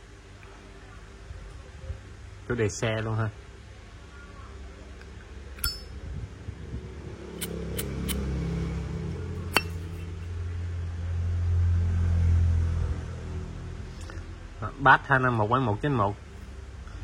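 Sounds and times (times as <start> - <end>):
lighter metal clinks: 5.6 - 6.0, 7.4 - 8.2.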